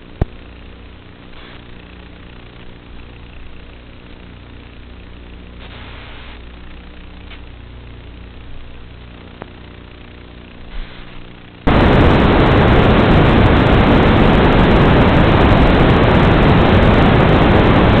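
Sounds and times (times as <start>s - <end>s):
faint steady hum: 0.0s - 18.0s
loud static hiss: 0.0s - 18.0s
small click: 7.2s - 7.5s.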